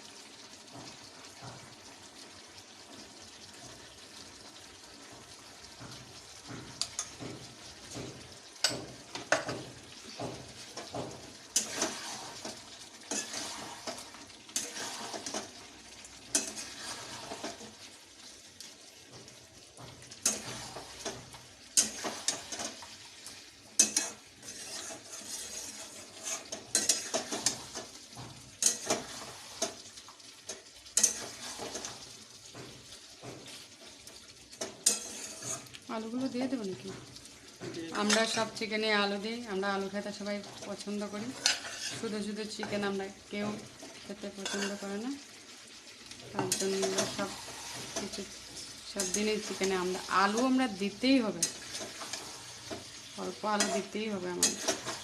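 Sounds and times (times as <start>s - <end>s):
frying sizzle: 0.0s - 55.0s
spoon scraping in a pan: 6.4s - 18.4s, 19.8s - 35.8s, 40.4s - 45.4s, 46.2s - 55.0s.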